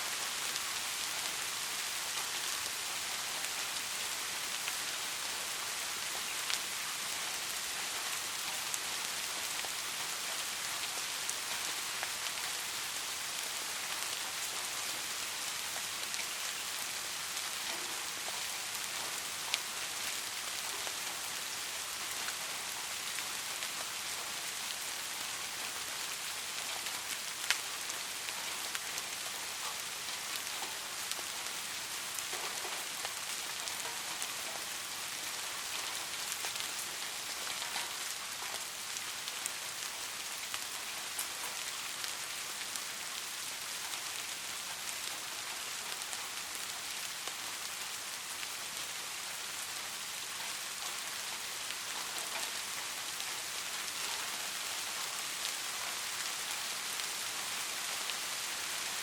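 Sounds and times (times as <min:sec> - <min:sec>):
soft rain hiss: 0:00.0 - 0:59.0
rain drop ticks: 0:35.5 - 0:42.8.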